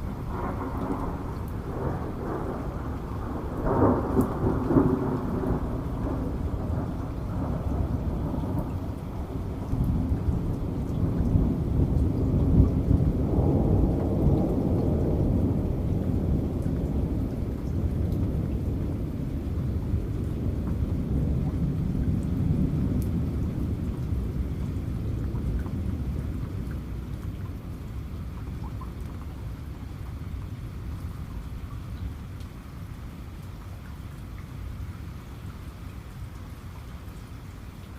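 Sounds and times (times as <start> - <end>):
deep thunder roll: 0.0 - 24.4
steady rain: 0.0 - 37.9.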